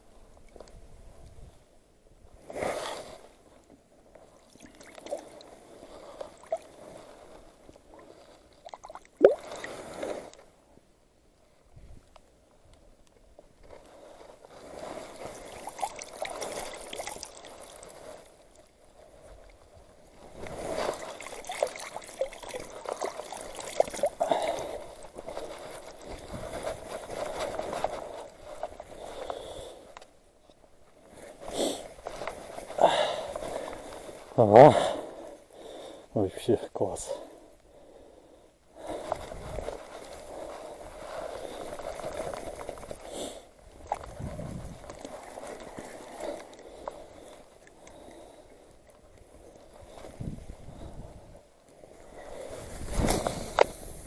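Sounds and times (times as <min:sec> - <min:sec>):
water splashing: 0:04.4 - 0:07.3, 0:14.8 - 0:18.5, 0:20.4 - 0:26.3.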